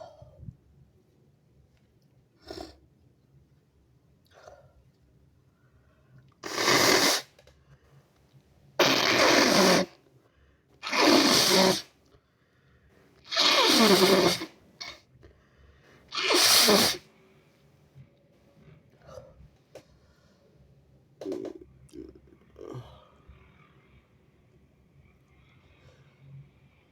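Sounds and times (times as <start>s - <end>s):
hard nose blows: 6.4s - 7.4s, 8.8s - 10.0s, 10.8s - 12.0s, 13.3s - 15.0s, 16.1s - 17.1s.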